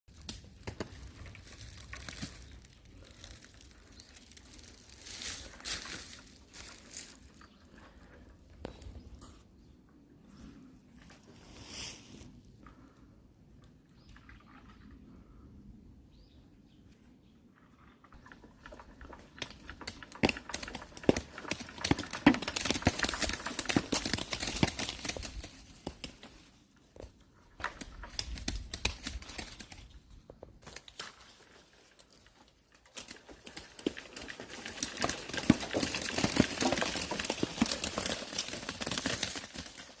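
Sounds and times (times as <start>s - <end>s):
crinkling rustling handling noise: 0.1s - 7.7s.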